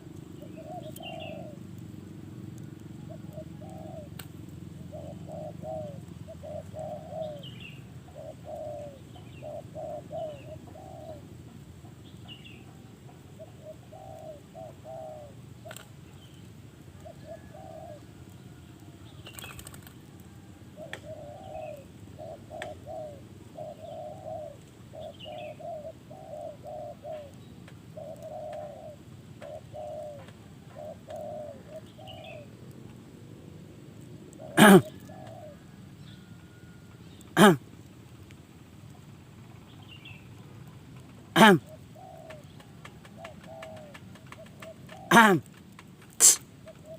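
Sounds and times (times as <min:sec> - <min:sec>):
dove cooing: 0:00.0 - 0:33.1, 0:33.7 - 0:46.9
faint bird chirps: 0:00.3 - 0:01.8, 0:12.0 - 0:32.5.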